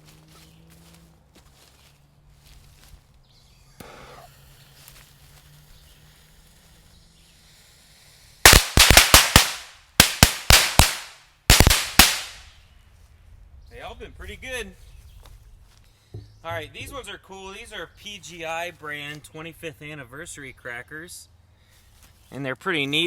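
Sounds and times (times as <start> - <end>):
firecracker bangs: 8.4 - 12.5.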